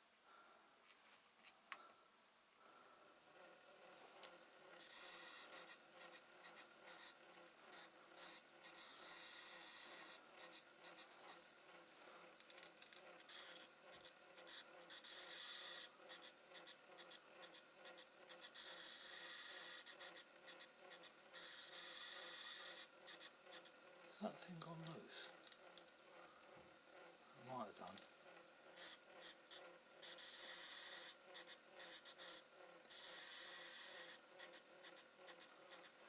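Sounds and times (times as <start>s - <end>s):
small clicks: 12.4s - 13.7s.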